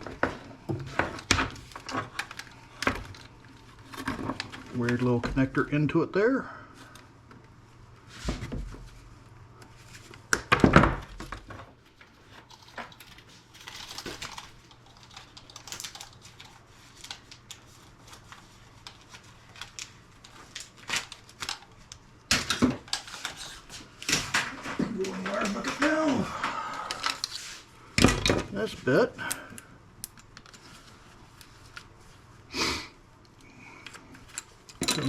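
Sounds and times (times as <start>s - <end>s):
plastic and metal parts rattling: 11.3s - 17.6s, 18.9s - 26.2s, 33.8s - 35.0s.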